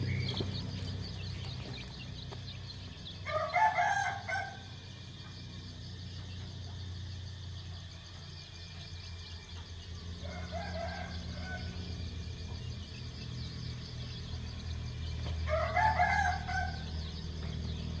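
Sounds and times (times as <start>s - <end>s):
chicken calling: 0.0s - 4.8s
steady low hum: 0.0s - 18.0s.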